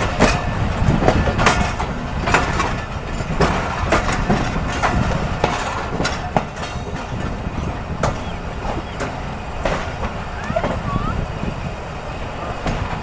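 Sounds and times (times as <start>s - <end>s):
wheel clicks over rail joints: 0.0s - 10.9s
train rumble: 0.0s - 13.0s.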